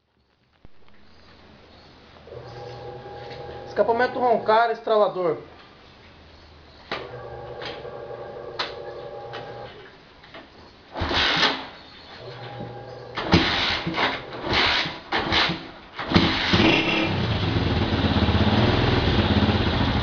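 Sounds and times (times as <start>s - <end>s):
motorcycle engine starting: 12.2s - 20.0s.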